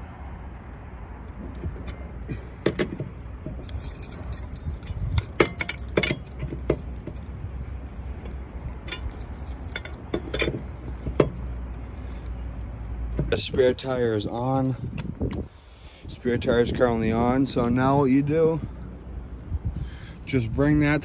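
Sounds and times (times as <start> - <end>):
metal tools clinking: 1.4 - 13.4.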